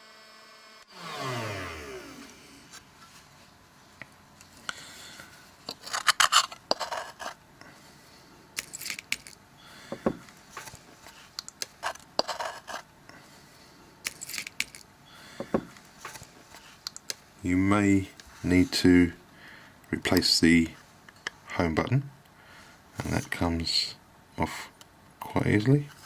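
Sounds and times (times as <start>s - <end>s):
blade scraping adhesive off metal: 10.6s - 12.8s.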